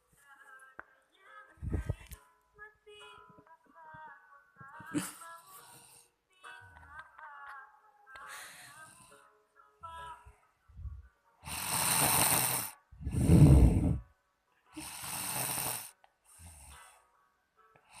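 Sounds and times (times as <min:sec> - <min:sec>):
woman snoring: 0:11.4 - 0:14.0, 0:14.8 - 0:16.8.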